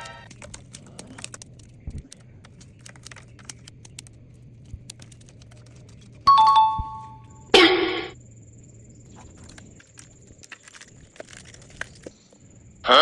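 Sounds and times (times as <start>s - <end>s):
two-tone ding: 6.3s - 8.1s
loud harsh sound: 7.6s - 8.2s.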